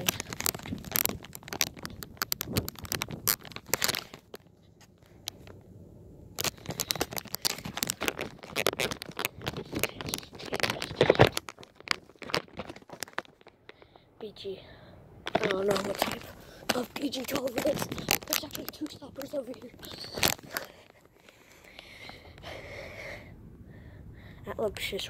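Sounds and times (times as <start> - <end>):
sharp little clicks: 0.0 - 4.5, 6.4 - 14.0, 15.3 - 22.5
rustling and crackling: 0.0 - 14.1, 15.2 - 22.6.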